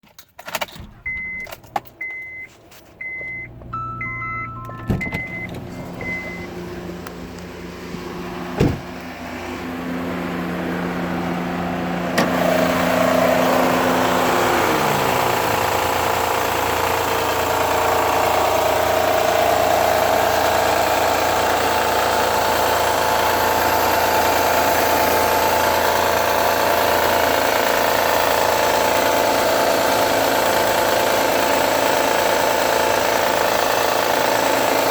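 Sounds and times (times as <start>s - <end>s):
car engine starting and idling: 0.0s - 34.9s
car chime beeping: 0.9s - 6.6s
engine knocking and ticking: 10.6s - 34.9s.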